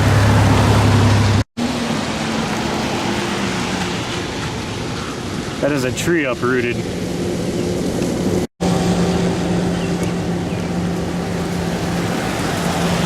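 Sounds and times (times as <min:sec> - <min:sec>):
motor hum: 0:06.8 - 0:13.0.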